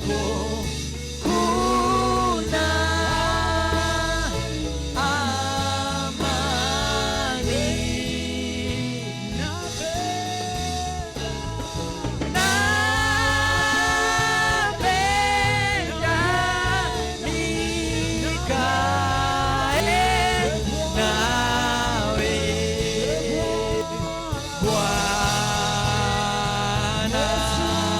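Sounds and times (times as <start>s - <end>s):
band with bass and drums: 0.0s - 27.9s
voices singing gospel: 0.0s - 27.9s.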